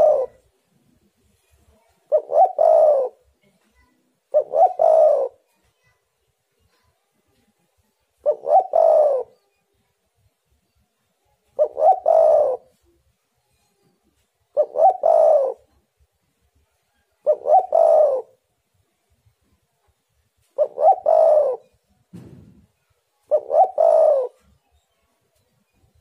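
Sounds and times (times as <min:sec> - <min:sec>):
dove cooing: 0:00.0 - 0:00.4, 0:02.1 - 0:03.3, 0:04.3 - 0:05.4, 0:08.2 - 0:09.4, 0:11.5 - 0:12.8, 0:14.5 - 0:15.8, 0:17.2 - 0:18.4, 0:20.6 - 0:21.7, 0:23.2 - 0:24.6.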